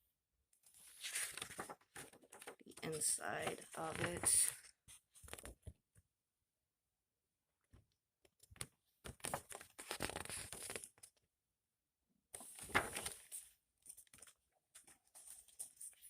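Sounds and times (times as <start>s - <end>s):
plastic case and paper rustling: 0.9s - 5.8s, 8.5s - 11.1s, 12.4s - 16.0s.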